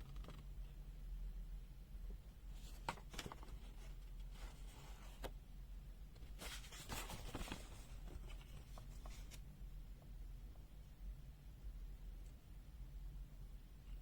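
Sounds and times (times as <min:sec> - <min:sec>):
low electrical hum: 0:00.0 - 0:14.0
paper or packaging rustling: 0:02.6 - 0:05.3, 0:06.2 - 0:09.4.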